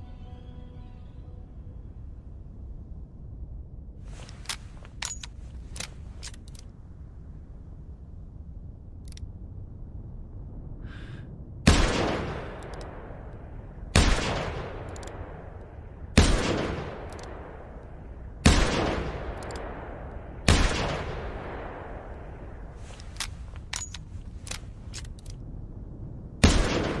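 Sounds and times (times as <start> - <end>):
faint small clicks: 4.1 - 6.8, 9.0 - 9.3, 12.5 - 13.4, 14.8 - 15.7, 17.0 - 17.9, 19.3 - 20.2, 22.8 - 25.5.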